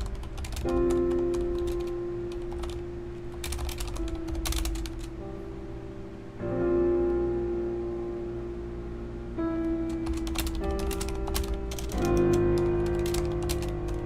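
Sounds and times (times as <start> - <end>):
mechanical keyboard typing: 0.0 - 5.2, 9.6 - 14.0
slow background music: 0.0 - 14.0.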